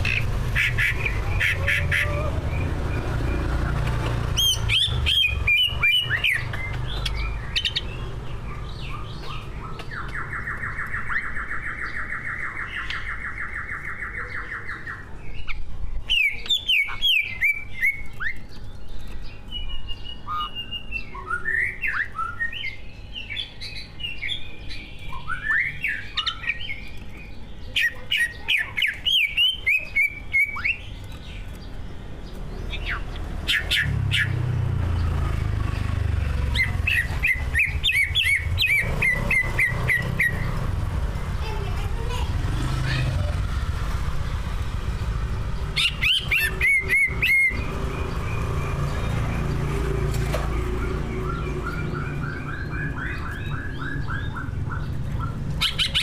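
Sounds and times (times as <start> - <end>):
bird singing chirps and whistles: 4.3 - 31.6, 32.3 - 34.6, 36.5 - 40.8, 45.6 - 50.0, 50.6 - 56.0.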